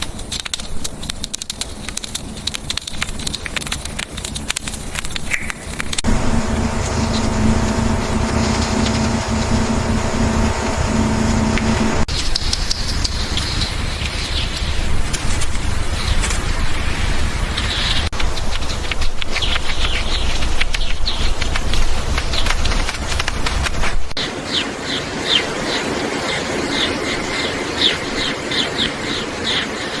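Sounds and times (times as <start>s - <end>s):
steady low hum: 5.9s - 12.1s.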